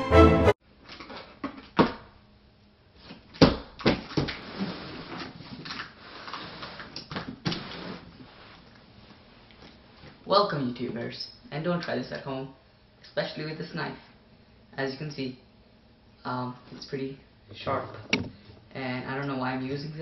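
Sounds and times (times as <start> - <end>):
rustling and scraping: 4.1 - 10.2
sharp knocks and clicks: 17.9 - 18.6.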